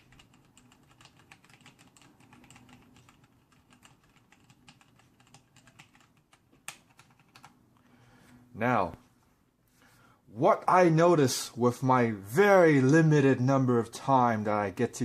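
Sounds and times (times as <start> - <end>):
rapid mechanical keyboard typing: 0.0 - 7.6.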